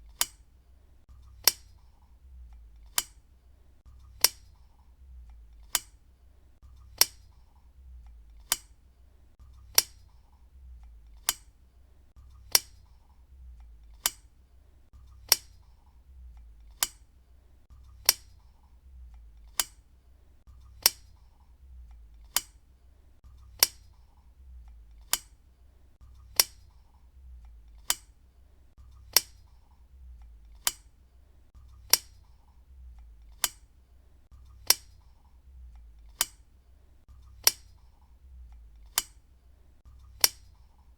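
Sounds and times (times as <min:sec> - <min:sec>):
lamp switch clicking: 0:00.1 - 0:00.5, 0:01.3 - 0:03.2, 0:04.0 - 0:04.7, 0:05.3 - 0:06.0, 0:06.8 - 0:08.8, 0:09.7 - 0:10.2, 0:10.8 - 0:11.6, 0:12.5 - 0:13.0, 0:13.6 - 0:14.3, 0:15.1 - 0:15.8, 0:16.4 - 0:17.1, 0:17.9 - 0:18.6, 0:19.2 - 0:19.9, 0:20.8 - 0:21.3, 0:21.9 - 0:22.6, 0:23.5 - 0:24.1, 0:24.7 - 0:25.4, 0:26.2 - 0:28.2, 0:29.0 - 0:31.0, 0:31.8 - 0:33.7, 0:34.6 - 0:36.5, 0:37.3 - 0:39.2, 0:40.0 - 0:40.8.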